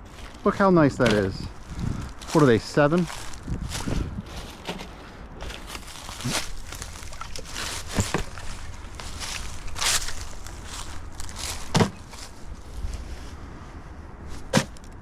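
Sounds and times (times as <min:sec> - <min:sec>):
footsteps through brush: 0:00.0 - 0:15.0
sharp knocks and crackles: 0:04.3 - 0:12.3.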